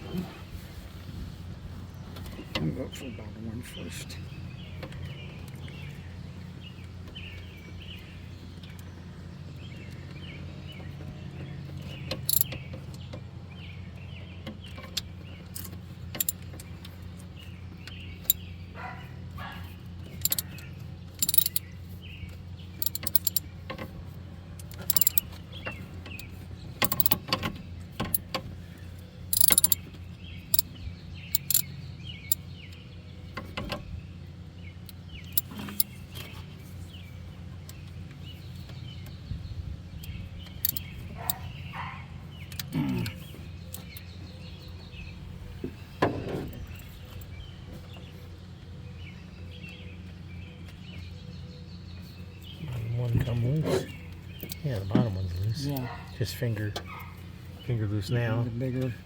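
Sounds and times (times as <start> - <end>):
ratchet metallic clicks: 12.1 - 12.6, 14.9 - 16.7, 20.1 - 21.7, 22.8 - 23.5, 24.6 - 25.4, 26.1 - 28.4, 29.3 - 29.9, 31.3 - 31.7, 35.3 - 36.0, 40.0 - 41.4.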